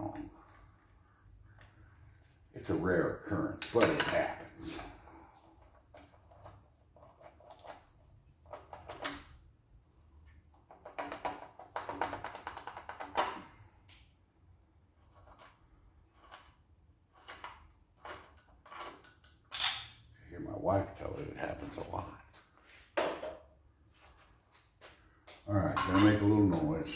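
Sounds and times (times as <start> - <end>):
metal tools clinking: 25.7 - 26.6.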